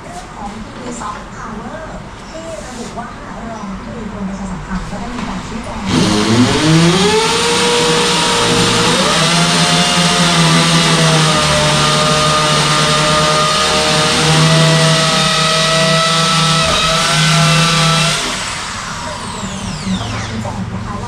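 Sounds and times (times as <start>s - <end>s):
power tool motor running: 5.7s - 20.6s.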